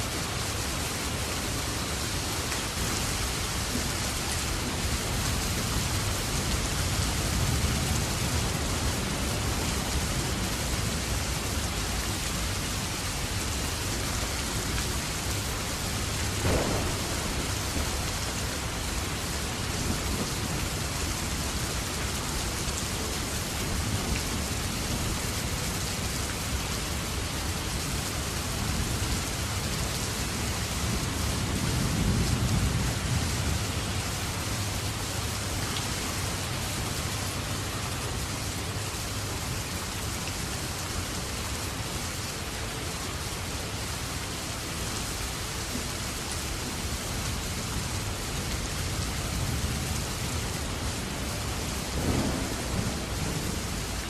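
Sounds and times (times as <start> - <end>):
steady rain falling: 0.0 - 54.0.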